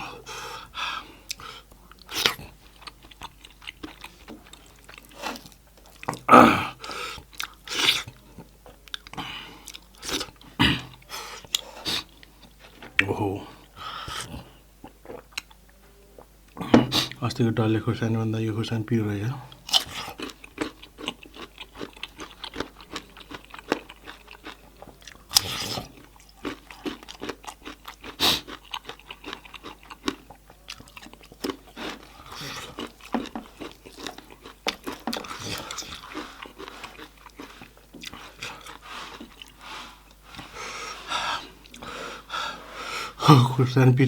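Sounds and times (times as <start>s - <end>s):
person chewing and smacking: 0.0s - 17.2s, 19.4s - 42.8s
breathy hissing: 38.8s - 43.2s.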